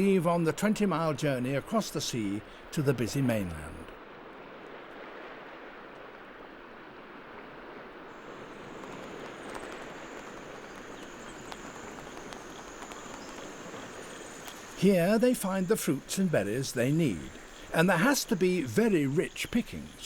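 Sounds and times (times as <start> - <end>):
rushing outdoor ambience: 0.0 - 20.0
insect trilling: 8.2 - 20.0.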